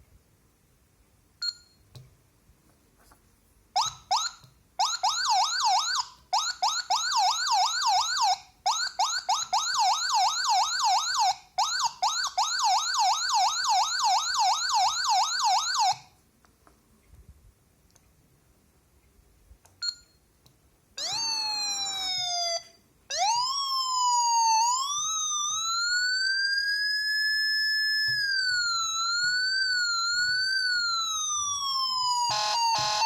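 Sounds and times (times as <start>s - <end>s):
fast yelping police siren: 4.1s - 16.0s, 21.0s - 33.0s.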